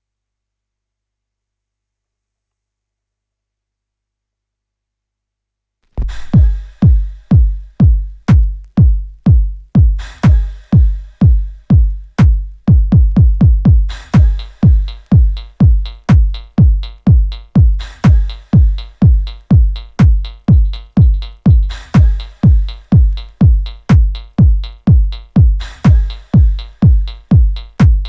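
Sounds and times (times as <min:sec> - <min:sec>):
cymbal crash: 0:06.0 - 0:07.7
four-on-the-floor kick drum: 0:06.0 - 0:28.0
techno record playing: 0:06.0 - 0:28.0
ticking hi-hat pattern: 0:06.0 - 0:28.0.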